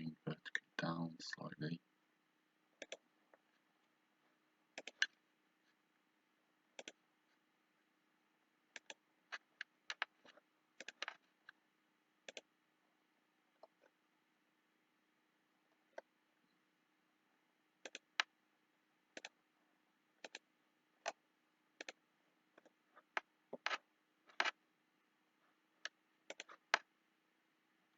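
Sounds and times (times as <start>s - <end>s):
faint steady hum: 0.0s - 27.9s
computer mouse clicking: 2.8s - 3.0s, 4.7s - 5.2s, 6.8s - 7.0s, 8.7s - 11.6s, 12.2s - 12.5s, 17.8s - 18.3s, 19.1s - 19.4s, 20.2s - 21.2s, 21.8s - 24.6s, 25.8s - 26.9s.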